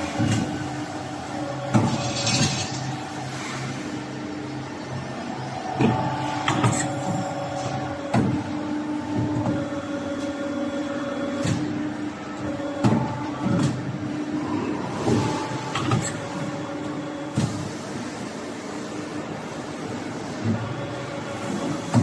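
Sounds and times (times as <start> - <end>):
machine hum: 0.0 - 18.6
machine clunks and knocks: 5.8 - 9.6.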